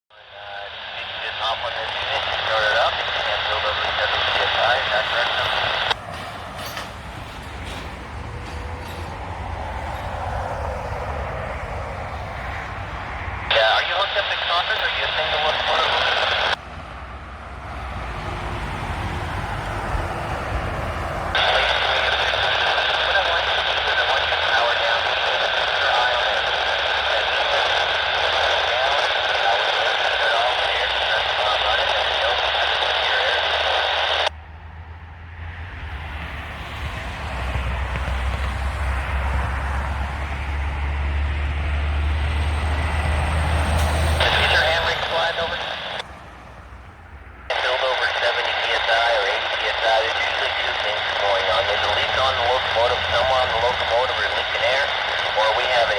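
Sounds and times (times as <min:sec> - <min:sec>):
train rumbling: 0:06.0 - 0:13.2.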